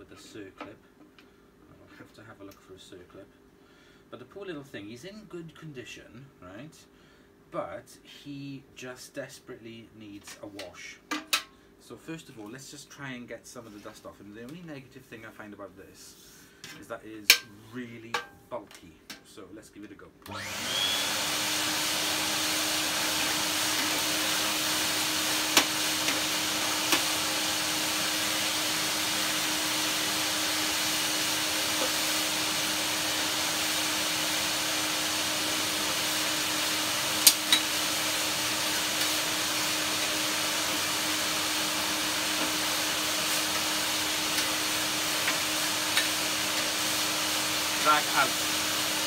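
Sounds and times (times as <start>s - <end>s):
vacuum cleaner running: 20.2s - 49.0s.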